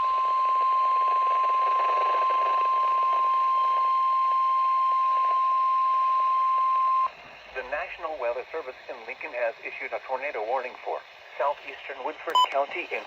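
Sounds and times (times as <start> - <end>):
steady warning alarm tone: 0.0 - 7.1
radio hiss: 7.4 - 13.0.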